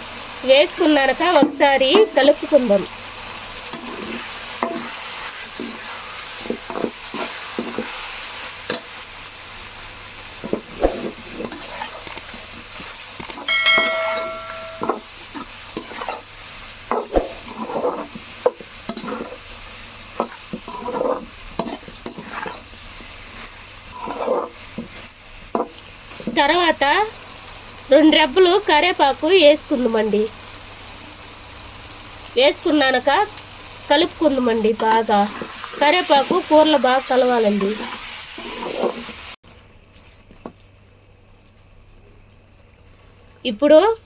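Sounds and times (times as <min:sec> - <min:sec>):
chicken sizzling in oil: 0:00.0 - 0:39.4
spoon scraping and knocking pan: 0:03.7 - 0:08.0, 0:10.4 - 0:16.2, 0:16.9 - 0:19.4, 0:20.2 - 0:22.6, 0:23.3 - 0:26.4, 0:37.6 - 0:39.2
brief ringing tone: 0:13.5 - 0:15.0.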